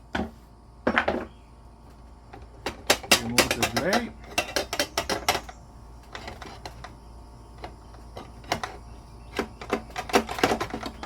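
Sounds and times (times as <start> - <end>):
metallic clicks and knocks: 2.6 - 7.0.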